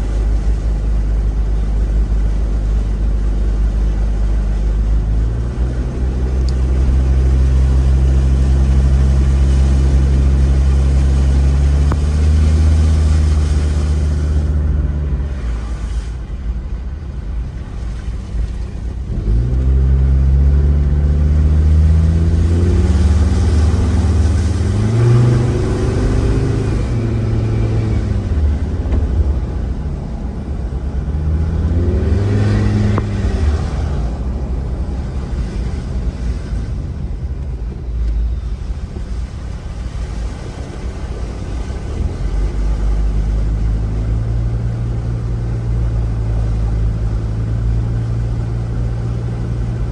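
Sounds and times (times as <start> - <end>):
car engines on flooded road: 0.0 - 49.9
car accelerating through gear changes: 19.1 - 29.4, 30.3 - 36.7.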